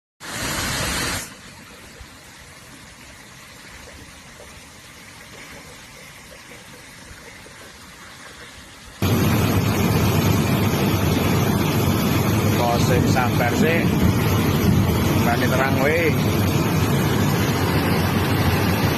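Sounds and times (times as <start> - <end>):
mudflow rushing and rumbling: 9.0 - 18.9.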